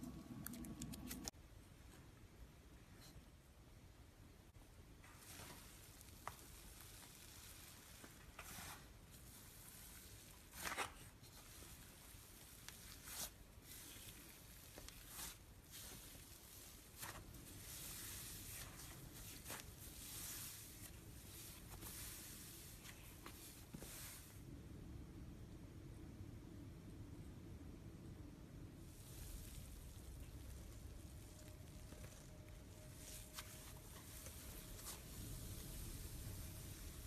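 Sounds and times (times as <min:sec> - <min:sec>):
slime stretched and squished: 0:05.1 - 0:24.2, 0:28.9 - 0:37.0.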